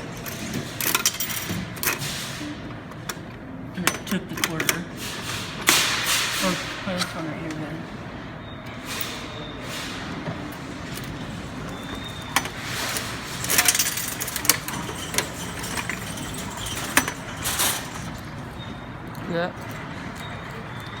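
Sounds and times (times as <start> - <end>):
coin mechanism clicking: 0.0 - 2.1, 3.8 - 4.8, 12.3 - 18.3
coins clinking into vending machine: 0.0 - 7.6, 10.4 - 20.9
steady background noise: 0.0 - 21.0.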